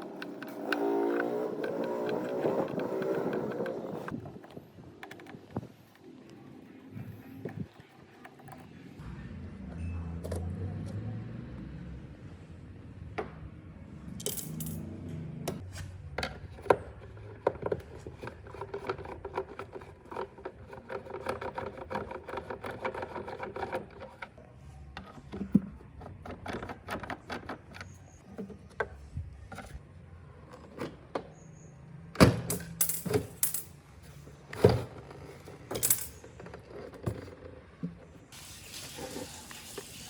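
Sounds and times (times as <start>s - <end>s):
hand tools clicking on plastic parts: 16.2s - 24.4s.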